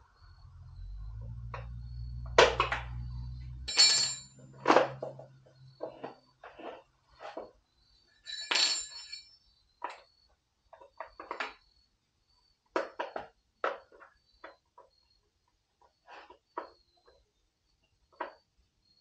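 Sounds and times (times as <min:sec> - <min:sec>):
metal parts and tools clinking: 0:01.6 - 0:05.2, 0:08.2 - 0:10.1
ringing metallic rattle: 0:03.3 - 0:04.6, 0:08.2 - 0:09.4.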